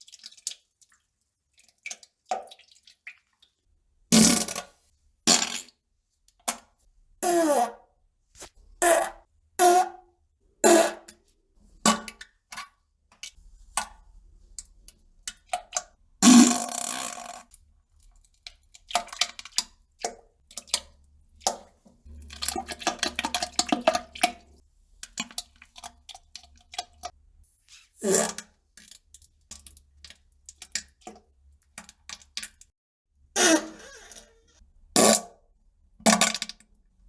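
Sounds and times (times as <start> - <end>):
farts: 33.4 - 34.4.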